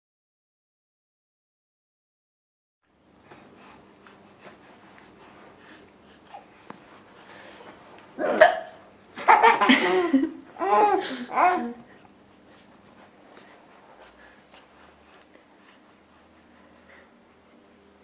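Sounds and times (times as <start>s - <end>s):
woman hiccuping: 8.2s - 8.8s
burst of laughter: 9.2s - 10.4s.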